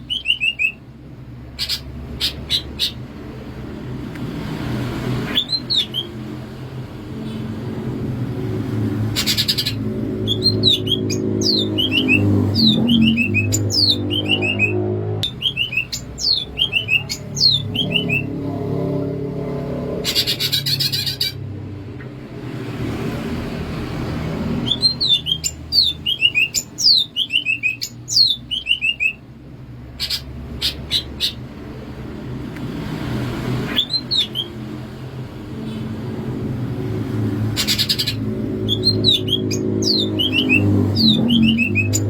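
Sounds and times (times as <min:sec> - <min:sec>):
bird whistling song: 0:00.0 - 0:00.8, 0:01.6 - 0:03.0, 0:05.3 - 0:06.2, 0:09.2 - 0:18.4, 0:20.0 - 0:21.4, 0:24.6 - 0:29.2, 0:30.0 - 0:31.4, 0:33.7 - 0:34.6, 0:37.6 - 0:42.0.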